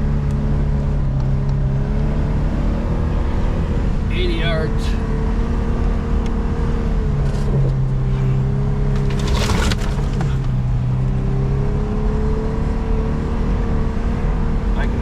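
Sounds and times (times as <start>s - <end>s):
vehicle engine driving through snow: 5.0s - 15.0s.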